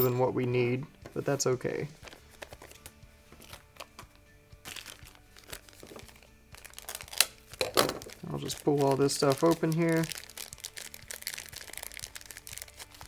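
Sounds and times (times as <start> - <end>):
soft background music: 0.0 - 13.0
plastic packaging crinkling: 4.6 - 13.0.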